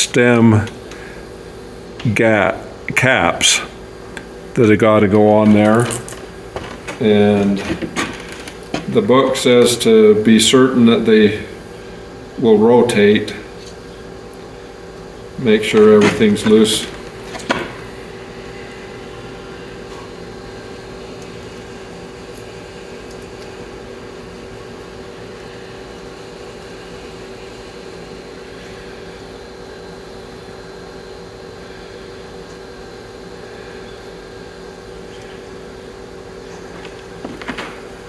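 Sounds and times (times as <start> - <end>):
motor humming: 0.0 - 26.2.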